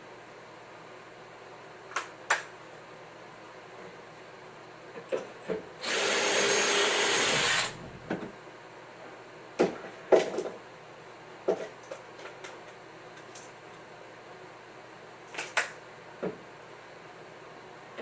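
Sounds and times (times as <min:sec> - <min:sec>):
power drill boring into wood: 0:05.8 - 0:08.0.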